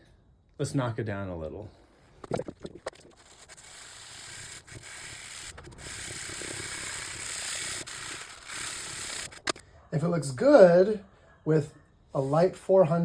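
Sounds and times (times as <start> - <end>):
fine-grit sanding of wood: 3.2 - 9.4.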